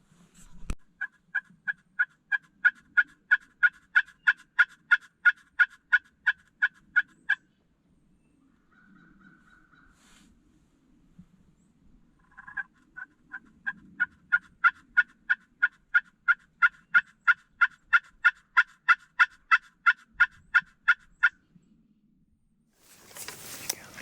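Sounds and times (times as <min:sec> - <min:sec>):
turkey yelps: 0:01.0 - 0:07.4, 0:12.3 - 0:21.3.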